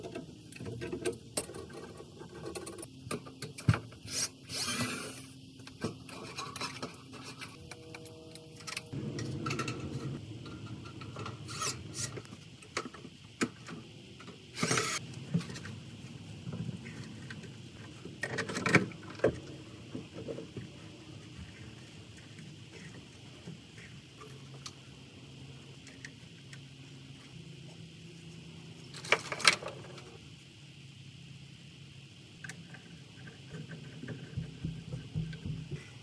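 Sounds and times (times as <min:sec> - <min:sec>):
tools scraping metal: 0:09.5 - 0:12.2, 0:14.6 - 0:15.0.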